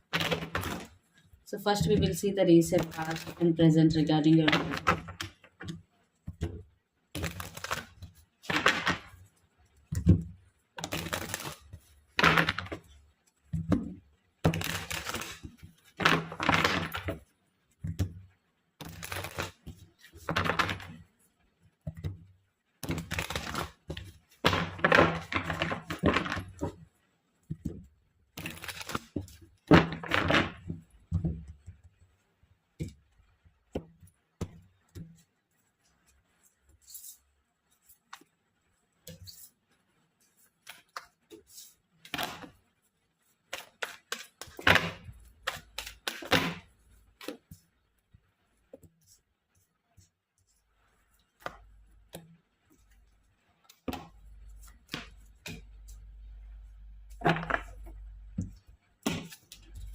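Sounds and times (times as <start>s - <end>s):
cards shuffled on a table: 7.2s - 9.2s, 18.8s - 21.1s, 27.5s - 31.7s, 39.0s - 42.6s, 57.1s - 59.9s.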